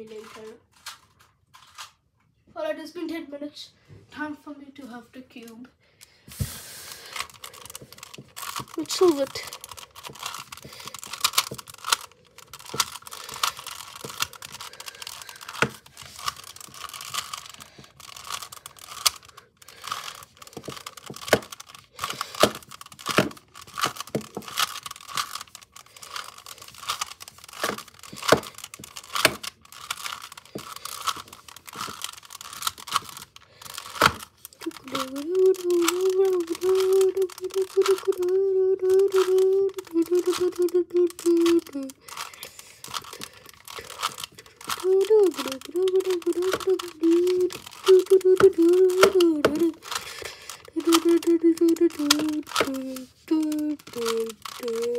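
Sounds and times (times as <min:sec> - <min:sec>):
plastic puzzle cube clicking: 0:06.4 - 0:54.9.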